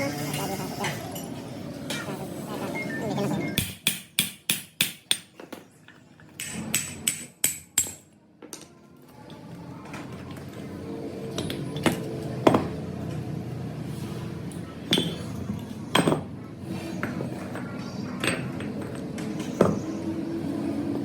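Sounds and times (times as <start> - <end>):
steady mechanical hum: 0.0 - 21.0
hammer striking metal: 3.6 - 5.3.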